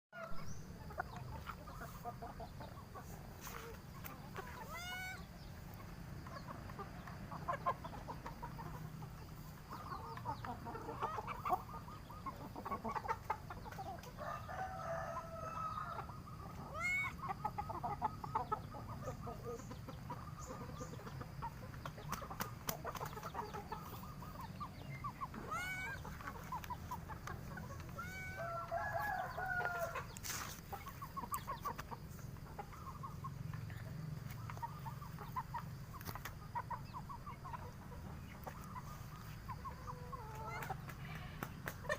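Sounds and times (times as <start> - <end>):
chickens clucking: 0.2 - 41.9.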